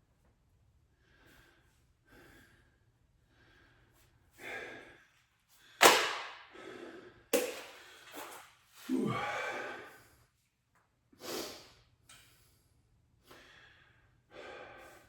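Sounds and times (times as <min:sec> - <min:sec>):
man breathing hard: 0:00.9 - 0:10.3, 0:13.2 - 0:15.0.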